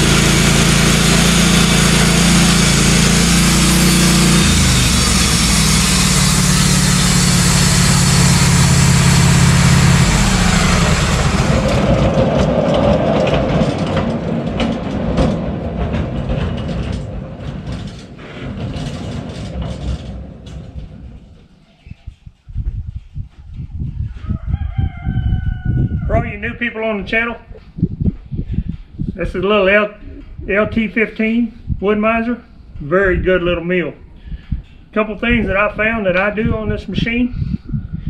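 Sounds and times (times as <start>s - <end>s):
sawmill engine running: 0.0s - 21.4s.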